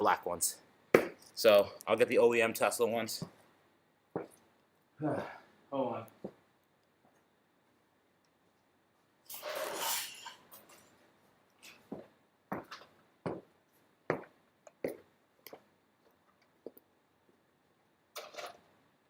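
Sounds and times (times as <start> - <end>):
objects scraping rustle: 9.3 - 11.0.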